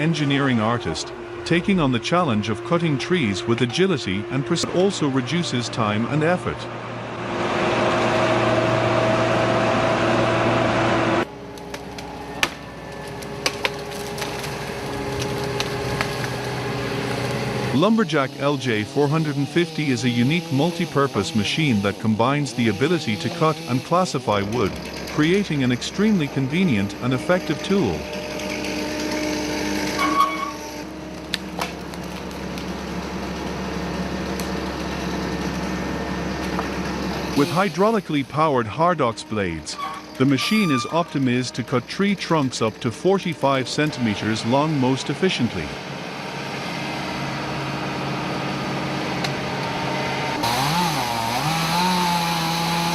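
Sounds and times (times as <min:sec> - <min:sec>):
heavy machine engine and hydraulics: 0:00.0 - 0:52.9
brief higher tone: 0:39.8 - 0:41.1.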